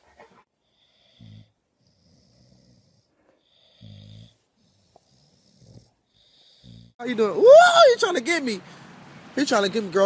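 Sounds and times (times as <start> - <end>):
dog snoring: 0.6 - 7.0.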